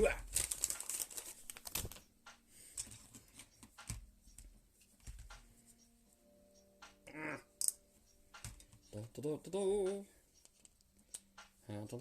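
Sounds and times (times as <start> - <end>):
faint background music: 0.0 - 12.0.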